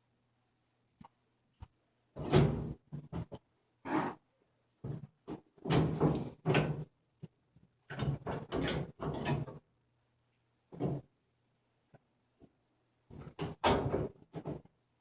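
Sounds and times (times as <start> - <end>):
washer parts knocking and scraping: 4.8 - 6.9, 7.9 - 9.6, 13.1 - 14.7.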